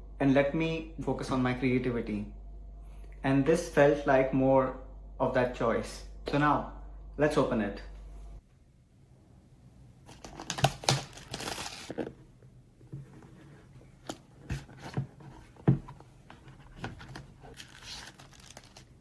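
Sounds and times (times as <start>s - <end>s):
packaging crinkling and tearing: 10.0s - 12.1s, 16.8s - 19.0s
packaging rustling: 10.0s - 19.0s
box knocks and taps: 14.1s - 17.2s.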